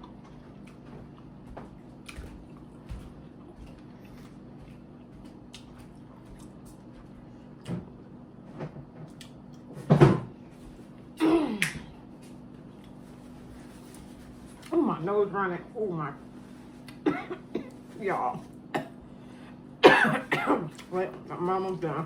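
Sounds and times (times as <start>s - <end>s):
low room hum: 0.0s - 22.0s.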